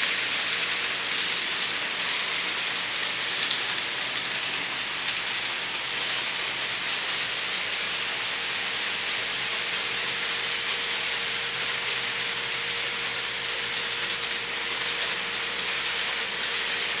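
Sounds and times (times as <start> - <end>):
model train motors whirring: 0.0 - 11.2.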